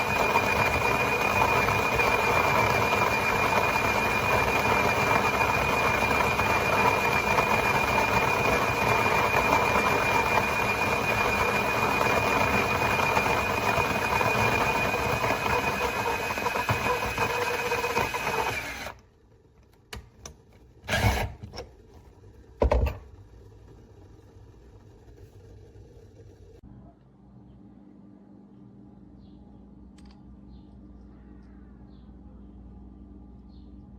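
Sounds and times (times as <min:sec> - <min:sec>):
coffee grinder motor whining: 0:00.0 - 0:19.0, 0:20.9 - 0:21.6.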